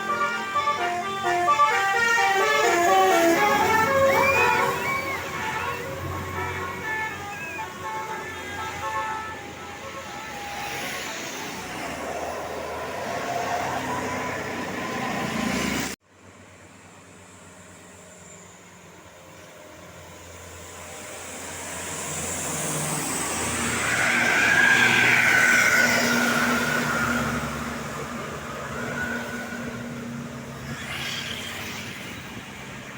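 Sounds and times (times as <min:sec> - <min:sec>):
vehicle horn: 0:00.0 - 0:10.8
buses passing: 0:00.0 - 0:32.9
road traffic: 0:00.0 - 0:32.9.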